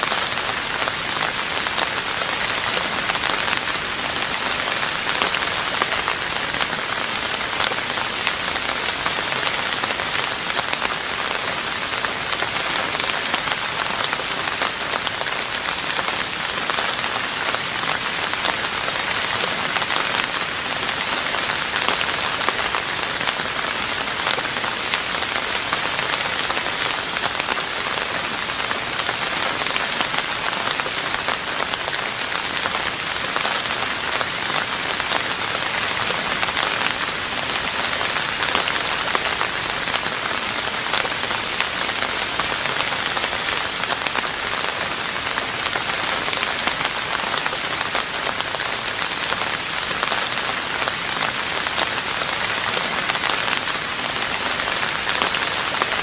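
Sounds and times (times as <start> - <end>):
rain falling on a roof: 0.0 - 56.0.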